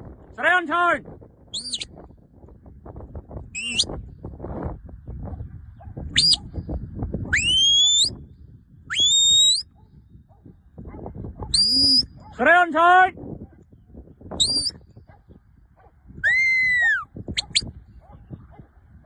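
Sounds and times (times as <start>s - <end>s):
high sweeping whistles: 1.6s - 1.8s, 3.6s - 3.9s, 7.4s - 8.2s, 11.6s - 12.1s, 14.4s - 14.8s.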